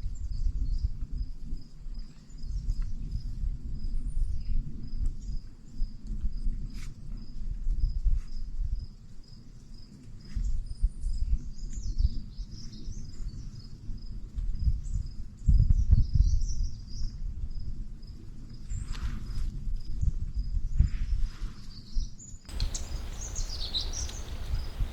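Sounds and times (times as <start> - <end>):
short rustle: 22.5 - 24.9
small birds chirping: 22.5 - 24.9.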